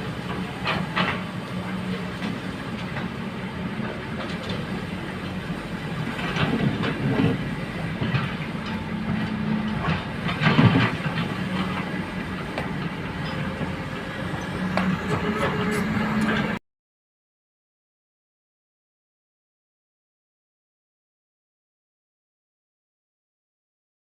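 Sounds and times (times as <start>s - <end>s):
excavator diesel engine: 0.0s - 16.6s
metallic clanks and scrapes: 14.3s - 16.6s.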